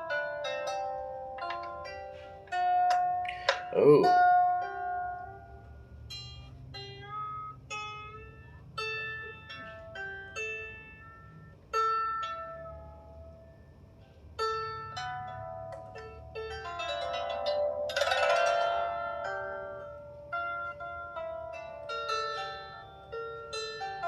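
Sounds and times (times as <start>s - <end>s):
harp strings plucked: 0.6s - 5.4s.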